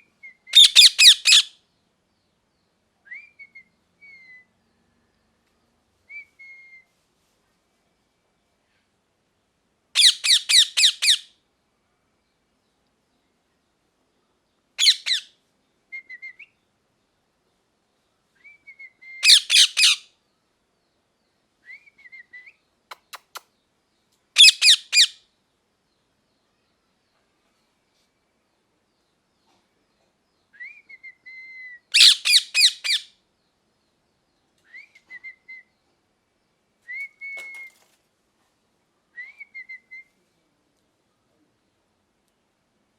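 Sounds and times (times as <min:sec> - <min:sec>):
parrot squawking: 0:00.6 - 0:01.5, 0:10.0 - 0:11.2, 0:14.8 - 0:15.2, 0:19.2 - 0:20.0, 0:24.4 - 0:25.2, 0:32.0 - 0:33.1
soft short whistles: 0:06.1 - 0:06.9, 0:36.8 - 0:37.9, 0:39.2 - 0:40.2
faint sharp clicks: 0:22.9 - 0:23.5.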